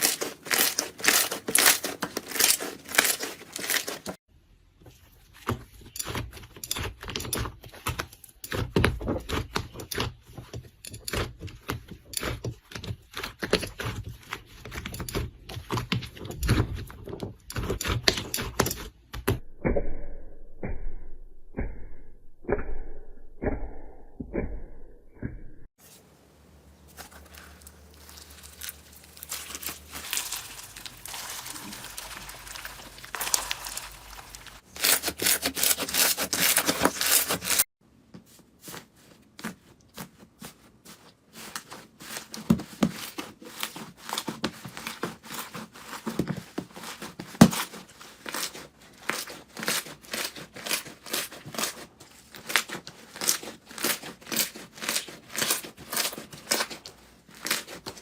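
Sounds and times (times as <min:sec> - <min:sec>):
material crinkling and tearing: 0:00.0 - 0:04.2, 0:26.8 - 0:37.7, 0:38.7 - 0:58.0.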